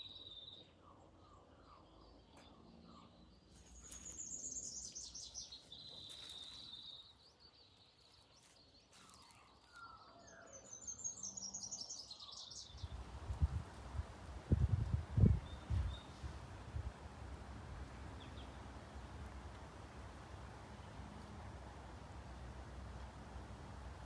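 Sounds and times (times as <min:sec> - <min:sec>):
birds singing: 0:00.0 - 0:13.0.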